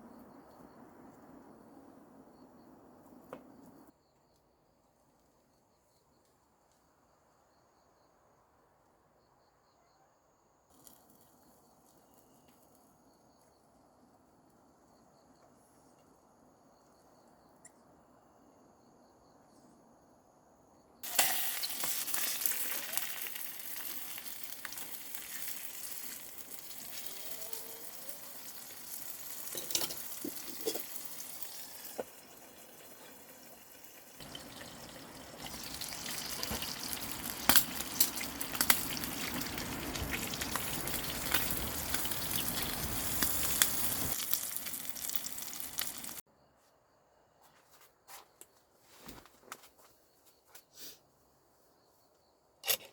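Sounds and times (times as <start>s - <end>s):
high insect chirping: 9.1s - 46.5s
food sizzling in a hot pan: 21.0s - 46.2s.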